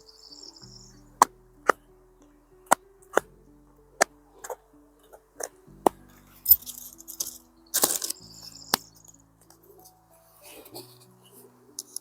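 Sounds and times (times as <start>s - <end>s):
background music: 0.0s - 12.0s
rustling: 4.0s - 12.0s.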